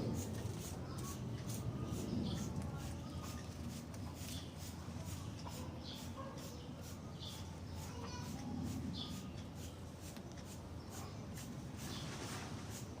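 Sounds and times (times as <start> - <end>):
small bird chirping: 8.9 - 12.4.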